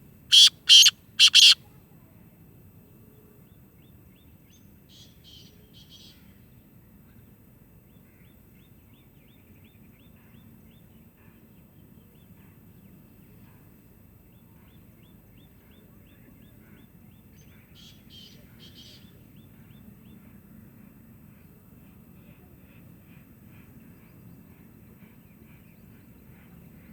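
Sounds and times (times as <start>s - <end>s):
bird chirping: 0.3s - 1.6s
harsh bird calls: 0.3s - 1.6s.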